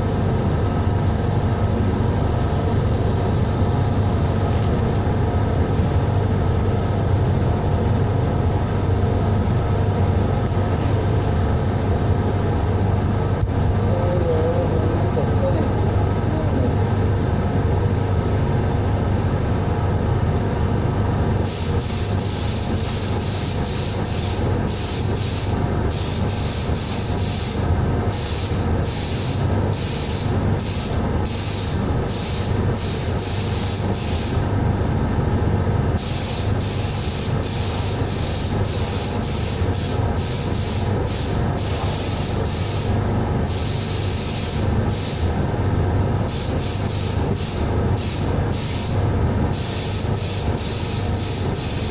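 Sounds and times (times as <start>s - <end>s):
steady low hum: 0.0s - 51.9s
sandblaster hissing: 21.4s - 34.4s, 36.0s - 45.4s, 46.3s - 51.9s.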